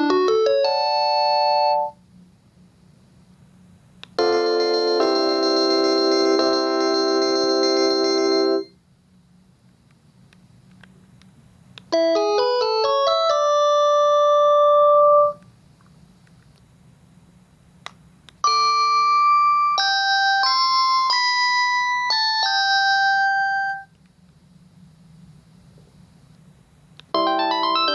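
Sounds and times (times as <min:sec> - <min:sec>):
phone ringtones: 0:27.2 - 0:27.9.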